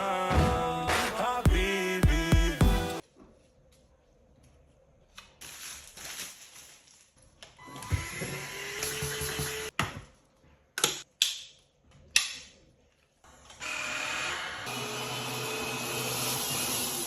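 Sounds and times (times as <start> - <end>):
vacuum cleaner motor running: 13.6 - 17.0.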